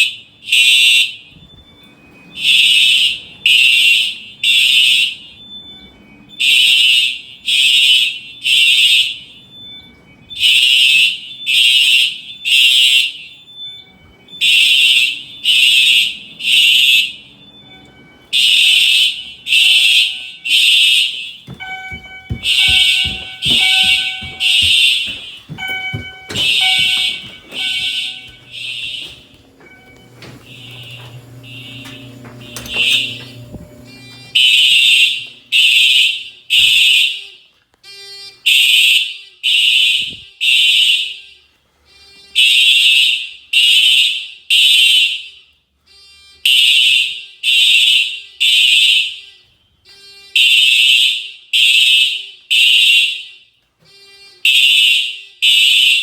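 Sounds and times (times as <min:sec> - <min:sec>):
fire alarm high tone blasts: 0:00.0 - 0:56.0
clicks: 0:25.0 - 0:34.3.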